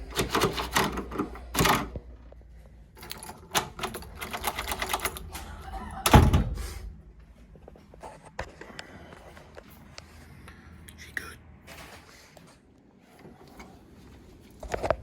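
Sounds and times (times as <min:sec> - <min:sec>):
door lock clicks and rattles: 0:00.0 - 0:02.0, 0:03.0 - 0:05.4.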